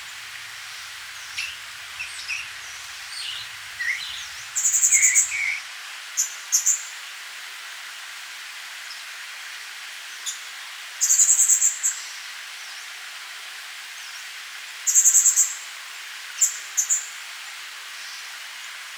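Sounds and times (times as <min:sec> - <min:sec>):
songbird chips: 0:00.0 - 0:05.6
songbird trills: 0:00.0 - 0:05.6
outdoor background hiss: 0:00.0 - 0:18.9.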